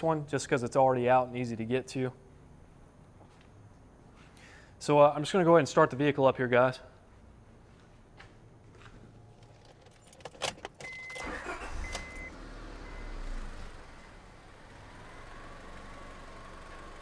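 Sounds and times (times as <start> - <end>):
car engine starting and idling: 9.4 - 17.0.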